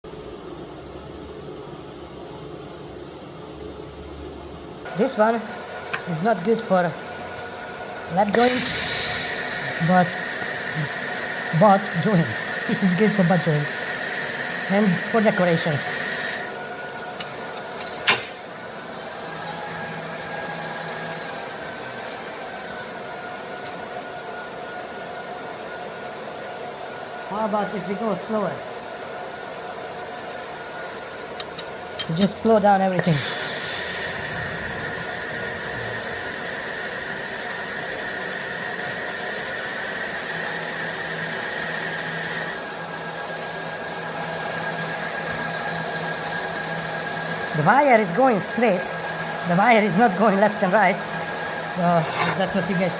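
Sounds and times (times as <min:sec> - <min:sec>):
laser welding machine humming: 0:08.3 - 0:16.8, 0:33.0 - 0:42.8.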